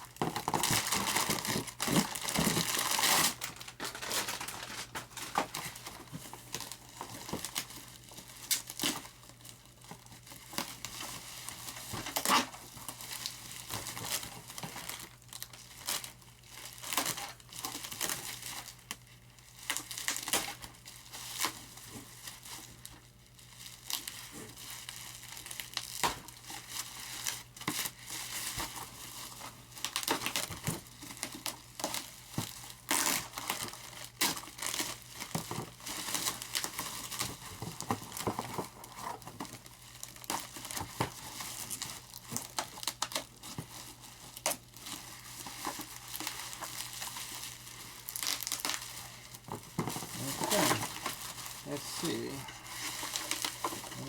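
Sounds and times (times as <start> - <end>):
plastic wrapping crinkling and tearing: 0.0 - 54.0
plastic crackles and clicks: 0.1 - 5.6.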